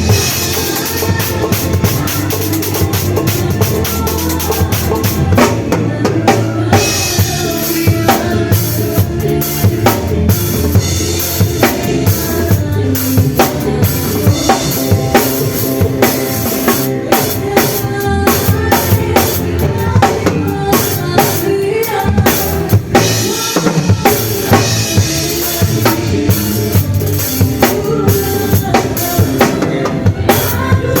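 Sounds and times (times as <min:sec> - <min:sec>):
band playing: 0:00.0 - 0:31.0
drum kit beat: 0:00.0 - 0:31.0.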